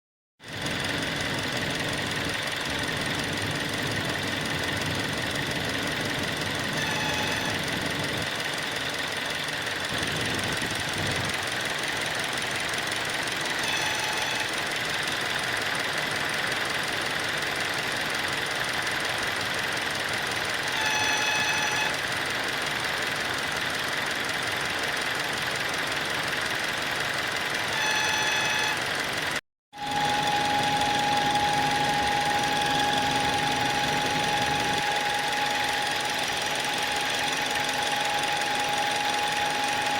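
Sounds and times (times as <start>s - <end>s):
car engine running: 0.6s - 39.9s
short pitched tones: 6.0s - 8.3s, 13.5s - 14.7s, 20.6s - 22.1s, 27.7s - 28.9s, 29.8s - 39.9s
high whistle from water pump: 6.6s - 8.3s, 13.4s - 15.2s, 20.6s - 22.2s, 27.6s - 28.9s, 29.8s - 39.9s.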